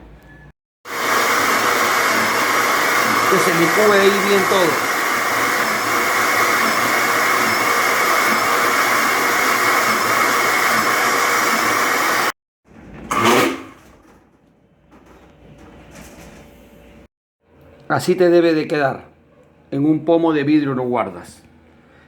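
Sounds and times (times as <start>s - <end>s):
electric blender running: 0.9s - 12.4s, 13.1s - 13.6s.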